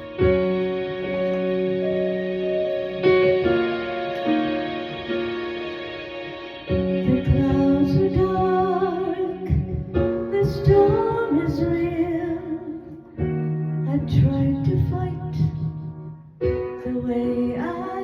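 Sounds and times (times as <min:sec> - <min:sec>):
slow gentle song chords: 0:00.0 - 0:18.0
woman singing: 0:07.0 - 0:13.1, 0:13.9 - 0:15.6, 0:16.8 - 0:18.0.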